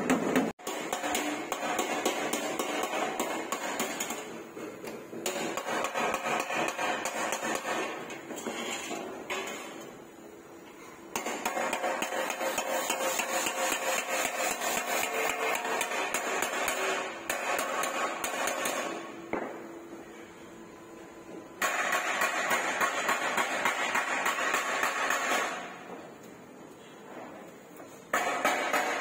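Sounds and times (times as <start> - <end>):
hammer striking sheet metal: 0.0 - 4.4, 5.2 - 9.8, 11.1 - 19.5, 21.6 - 25.9, 28.1 - 29.0.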